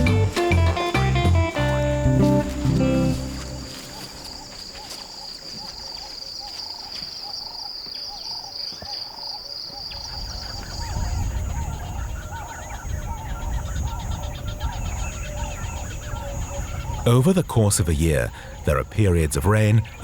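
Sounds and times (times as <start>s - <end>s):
high insect buzz: 0.0s - 6.6s
bird chirps: 0.0s - 17.1s
bird calling: 0.0s - 20.0s.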